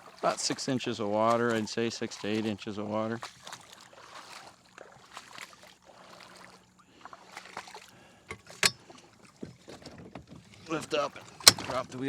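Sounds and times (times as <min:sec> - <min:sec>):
kayak landing gear clattering: 0:08.1 - 0:12.0.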